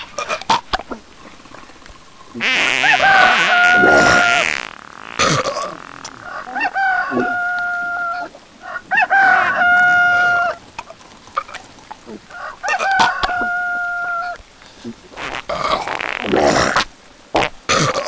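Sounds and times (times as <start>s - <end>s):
rooster crowing: 2.8s - 4.4s, 6.2s - 10.6s, 12.3s - 14.4s.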